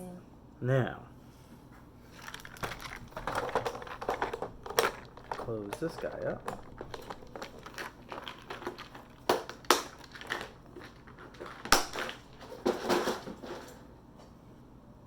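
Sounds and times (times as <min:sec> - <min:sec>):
plastic crackling and rustling: 0:02.1 - 0:13.8.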